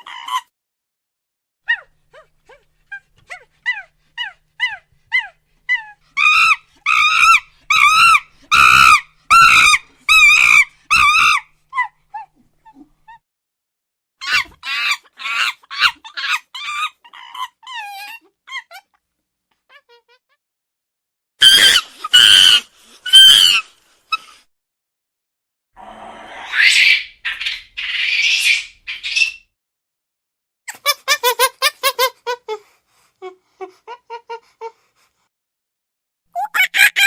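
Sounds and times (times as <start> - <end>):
monkey calls: 2.9 - 12.3, 26.4 - 29.4, 36.4 - 37.0.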